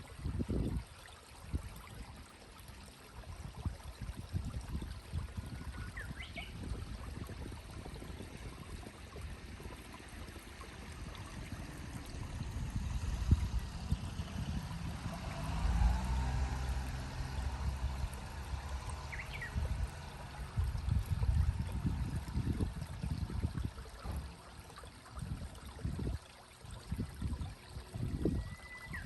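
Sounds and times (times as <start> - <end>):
thin rising bird whistle: 28.3 - 29.0.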